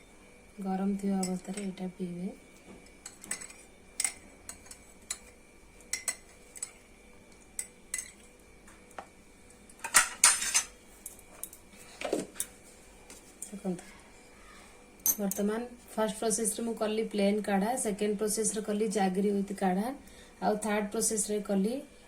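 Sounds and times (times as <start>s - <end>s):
metal spoon clinking cup: 5.9s - 6.7s.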